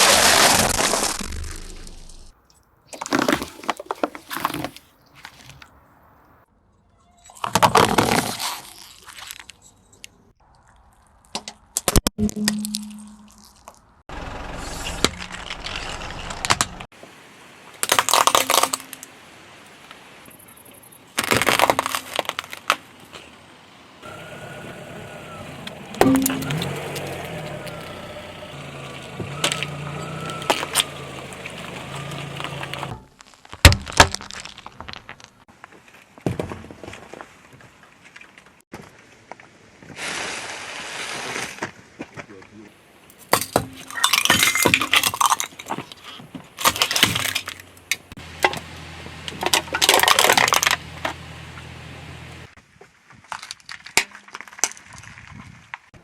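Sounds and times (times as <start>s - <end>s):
objects crunching under car tyre: 0.0s - 6.1s, 7.3s - 10.1s, 14.6s - 16.9s, 17.8s - 19.2s, 21.2s - 23.4s, 24.0s - 42.4s, 43.1s - 56.0s
car engine with whine: 14.1s - 16.8s, 23.2s - 33.0s, 46.8s - 52.6s
small crackles: 17.8s - 23.4s, 27.6s - 36.2s, 52.6s - 55.9s.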